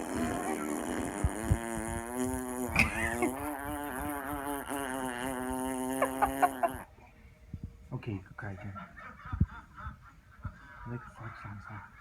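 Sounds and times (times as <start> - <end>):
man blowing a raspberry: 0.0 - 6.9.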